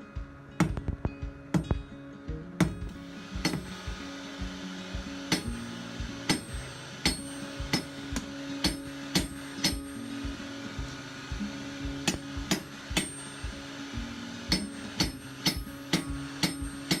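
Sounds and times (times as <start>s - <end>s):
hammer ringing on anvil: 2.6s - 3.9s, 5.2s - 10.9s, 12.0s - 13.8s, 14.5s - 17.0s.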